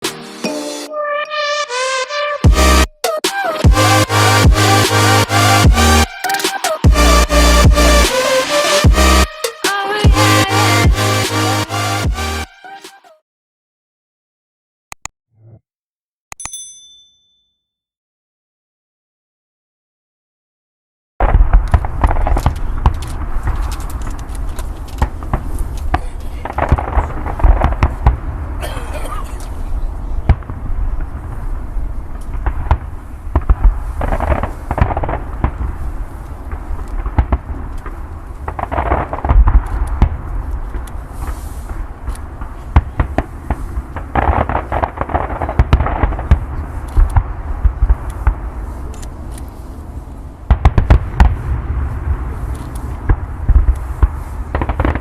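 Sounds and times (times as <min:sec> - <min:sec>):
fireworks bangs and crackles: 0:21.2 - 0:55.0.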